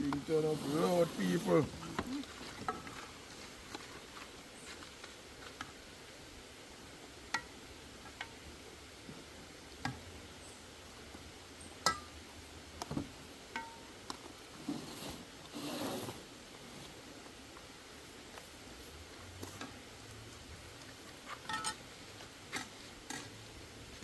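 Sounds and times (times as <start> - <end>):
faint steady hiss: 0.0 - 24.0.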